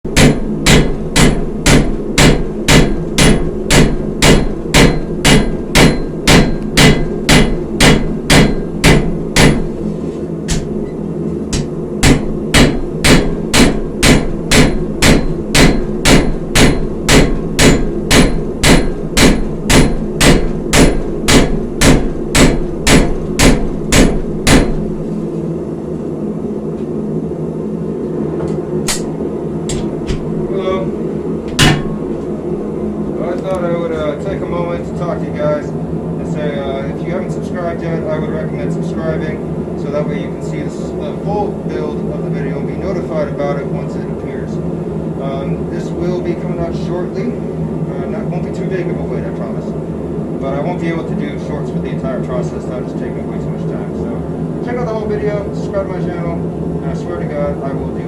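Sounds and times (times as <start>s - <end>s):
steady low hum: 0.0s - 58.0s
hammer blows on an anvil: 0.1s - 9.8s, 11.5s - 24.9s, 31.6s - 32.0s.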